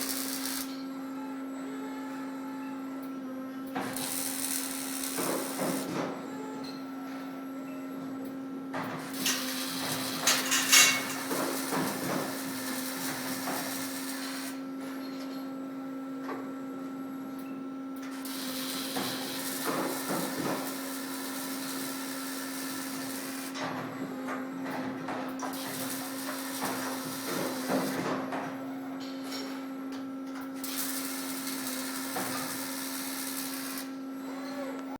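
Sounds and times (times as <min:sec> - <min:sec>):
welding arc hissing and crackling: 0:00.0 - 0:00.8, 0:03.9 - 0:05.9, 0:09.1 - 0:14.6, 0:18.2 - 0:23.5, 0:25.6 - 0:28.0, 0:30.6 - 0:34.0
steady machine hum: 0:06.4 - 0:12.9.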